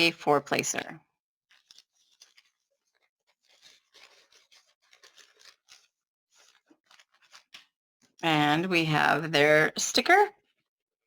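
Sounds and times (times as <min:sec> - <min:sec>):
rustling of plastic packaging: 0:01.5 - 0:08.2.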